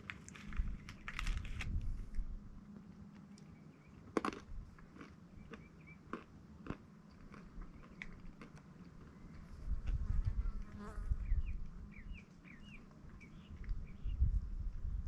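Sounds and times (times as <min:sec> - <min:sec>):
low rumble: 0:00.0 - 0:03.4.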